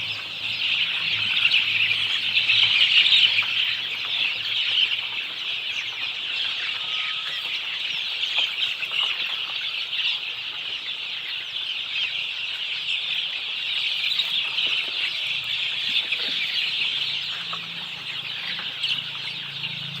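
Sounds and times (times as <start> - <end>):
chickens chirping and clucking: 0.0 - 20.0.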